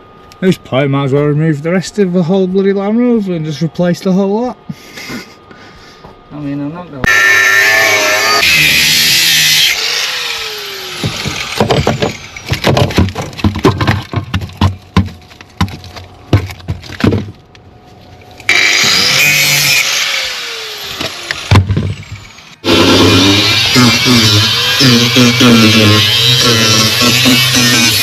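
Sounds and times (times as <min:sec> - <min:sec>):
power tool running: 0:07.0 - 0:12.7, 0:18.5 - 0:28.0.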